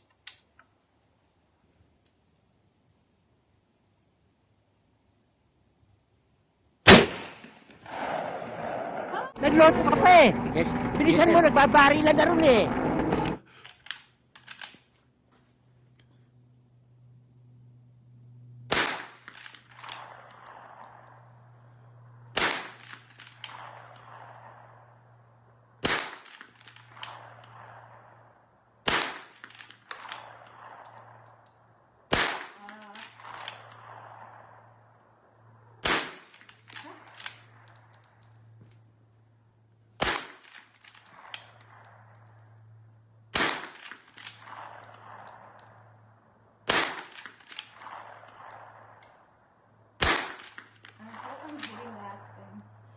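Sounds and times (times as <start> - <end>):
loud gunshots with ringing echo: 6.9 - 8.9, 18.7 - 19.2, 22.3 - 22.8, 28.8 - 29.3, 32.1 - 34.8, 35.8 - 36.3, 40.0 - 40.4, 44.4 - 45.6, 46.7 - 47.1, 50.0 - 50.4
steady low hum: 8.6 - 52.9
faint cracks: 18.8 - 24.7, 25.9 - 27.9, 28.9 - 34.6, 35.8 - 38.9, 40.0 - 42.7, 43.4 - 45.9, 46.7 - 49.4, 50.0 - 52.7.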